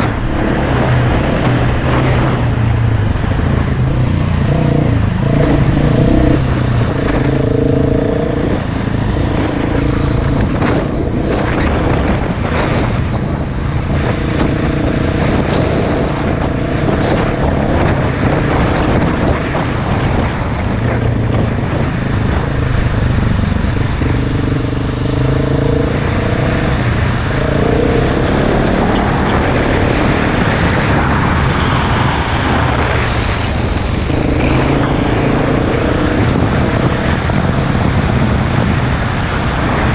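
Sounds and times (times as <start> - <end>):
steady rushing noise: 0.0 - 39.9
dirt bike engine revving: 3.4 - 12.0, 22.4 - 31.2.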